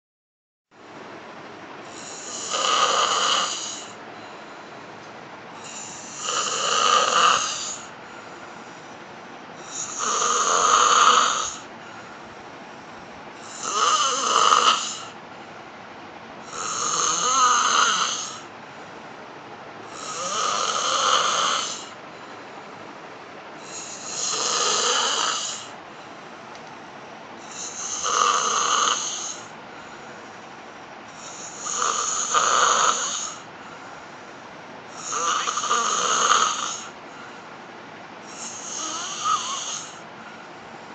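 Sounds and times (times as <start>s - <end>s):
quiet breathing: 0.8s - 2.6s, 3.4s - 17.4s, 18.2s - 35.9s, 36.5s - 40.9s
woman snoring: 1.9s - 4.0s, 5.6s - 7.9s, 9.6s - 11.7s, 13.4s - 15.2s, 16.4s - 18.4s, 19.9s - 22.0s, 23.6s - 25.8s, 27.4s - 29.5s, 31.1s - 33.5s, 34.9s - 37.0s, 38.2s - 40.0s.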